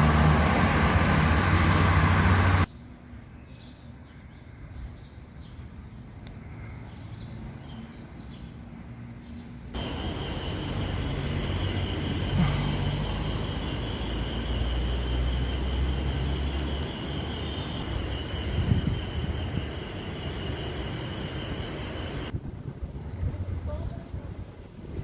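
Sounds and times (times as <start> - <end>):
vehicle engine hum: 0.0 - 2.7, 8.9 - 24.0
birds chirping: 1.5 - 22.3
high-pitched whine: 9.8 - 22.4.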